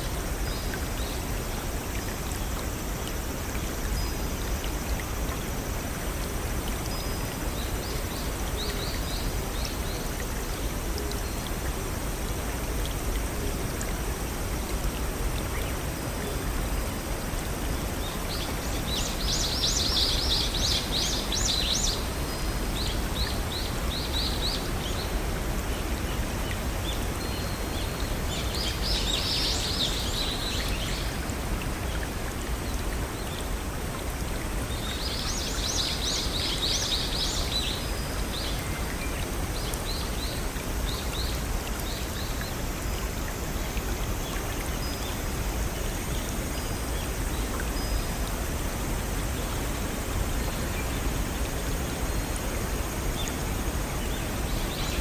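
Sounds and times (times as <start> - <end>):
rushing brook: 0.0 - 55.0.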